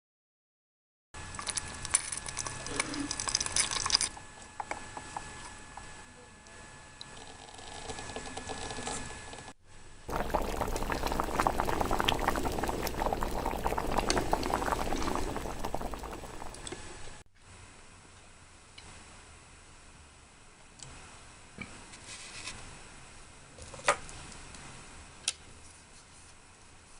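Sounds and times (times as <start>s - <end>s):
liquid bubbling and crackling: 1.3s - 5.4s, 10.1s - 17.2s
faint liquid trickle: 10.1s - 16.8s.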